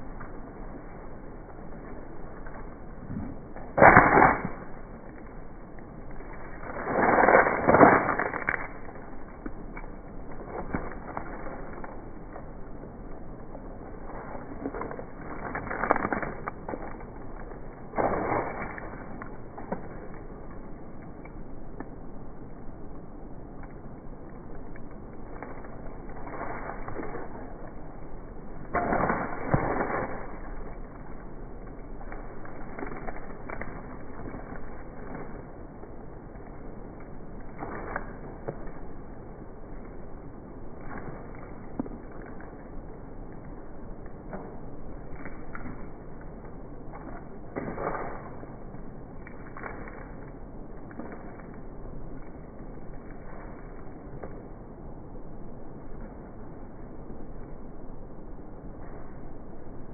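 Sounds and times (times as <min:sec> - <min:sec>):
object being smashed: 0:03.7 - 0:04.8.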